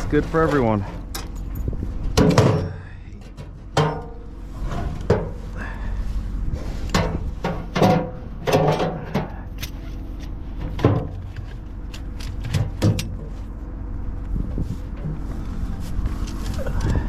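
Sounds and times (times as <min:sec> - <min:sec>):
steady low hum: 0:00.0 - 0:17.0
sharp clunks and knocks: 0:02.1 - 0:05.4, 0:06.9 - 0:09.8, 0:10.6 - 0:11.6, 0:12.2 - 0:13.3.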